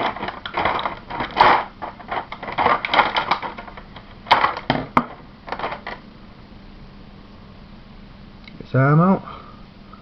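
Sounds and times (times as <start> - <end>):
plastic parts clicking and rattling: 0.0 - 6.0
sharp plastic clacks: 0.0 - 6.0.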